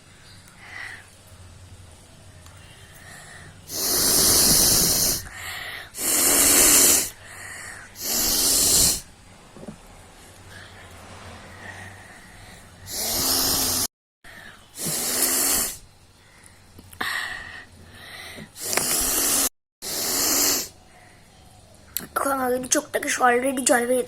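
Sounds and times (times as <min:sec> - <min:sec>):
woman blowing her nose: 0:03.7 - 0:05.3, 0:06.0 - 0:07.2, 0:08.0 - 0:09.1, 0:12.9 - 0:13.9, 0:14.8 - 0:15.8, 0:18.6 - 0:20.8.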